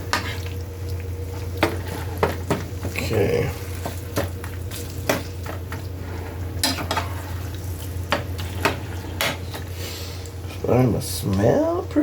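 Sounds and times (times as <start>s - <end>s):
meat sizzling in a frying pan: 0.0s - 10.5s
spatula scraping a pan: 5.1s - 10.1s.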